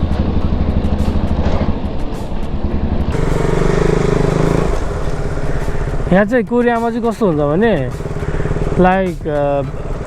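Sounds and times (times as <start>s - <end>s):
motorcycle engine running: 3.1s - 10.0s.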